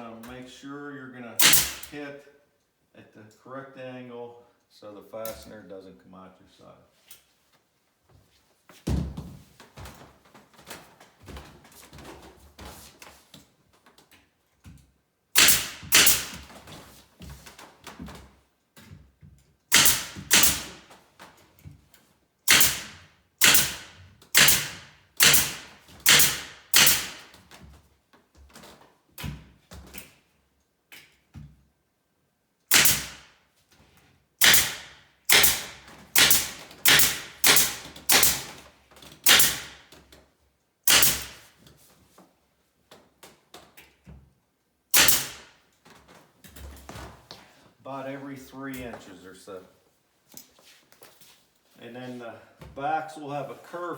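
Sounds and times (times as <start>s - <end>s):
nail gun firing: 1.4s - 2.0s, 15.4s - 16.8s, 19.7s - 21.0s, 22.5s - 27.4s, 32.7s - 33.4s, 34.4s - 40.0s, 40.8s - 41.6s, 44.9s - 45.6s.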